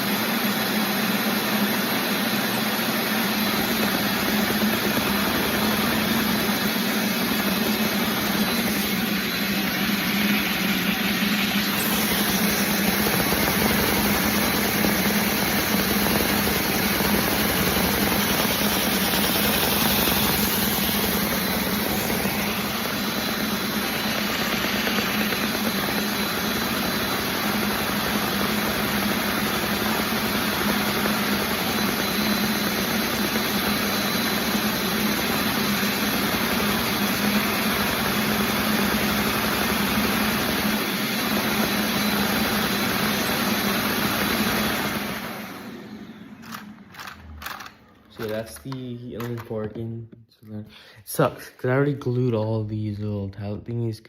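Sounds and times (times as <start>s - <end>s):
model engine running: 2.8s - 48.7s.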